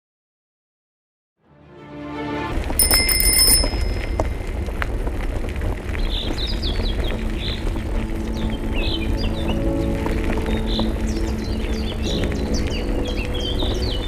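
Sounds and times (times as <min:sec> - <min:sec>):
steady rushing noise: 0:02.5 - 0:14.0
bell-like ring: 0:02.8 - 0:04.6
birds chirping: 0:05.9 - 0:14.0.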